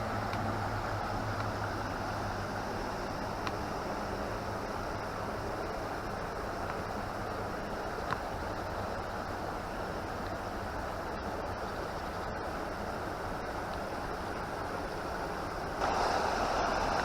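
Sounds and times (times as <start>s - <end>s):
river rushing over rocks: 0.0s - 17.0s.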